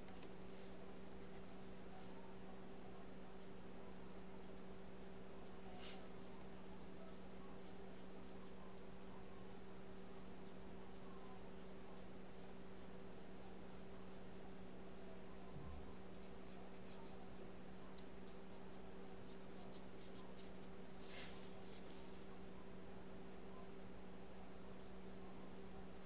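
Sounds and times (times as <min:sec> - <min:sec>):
paintbrush stroking on paper: 0:05.4 - 0:06.4, 0:19.3 - 0:22.3.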